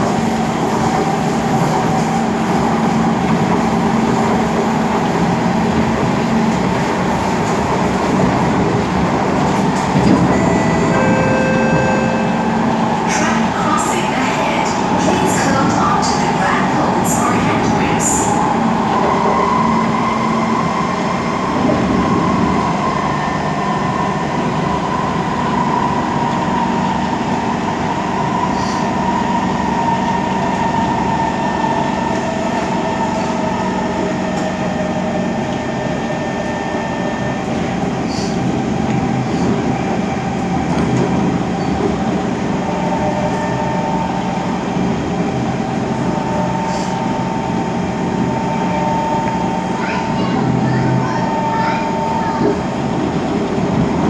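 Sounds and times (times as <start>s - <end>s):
rumble of wheels on track: 0.0s - 54.0s.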